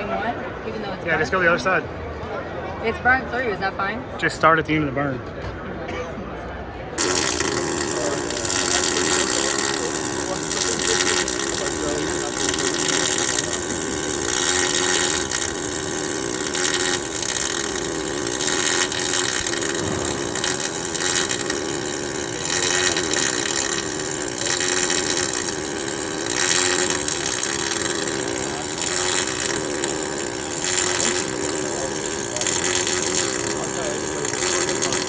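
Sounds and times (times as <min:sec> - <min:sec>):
constant low hum: 0:07.0 - 0:35.0
welding arc hissing crackle: 0:07.0 - 0:35.0.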